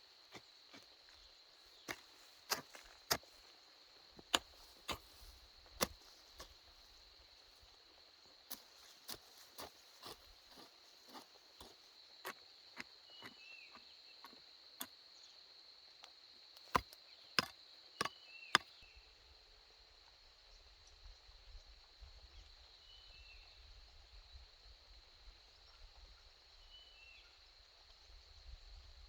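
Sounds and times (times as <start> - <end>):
hand tool chopping: 1.9 - 3.3, 4.2 - 6.6, 16.7 - 18.7.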